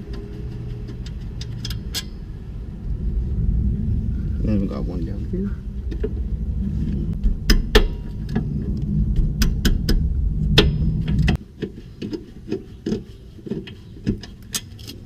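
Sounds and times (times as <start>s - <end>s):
steady low rumble: 0.0s - 11.6s.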